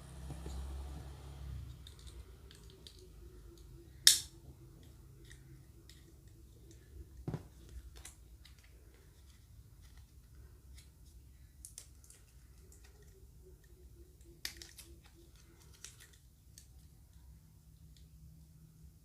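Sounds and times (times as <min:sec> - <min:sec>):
plastic parts clicking: 0:01.7 - 0:17.2
plastic snap: 0:04.0 - 0:04.4.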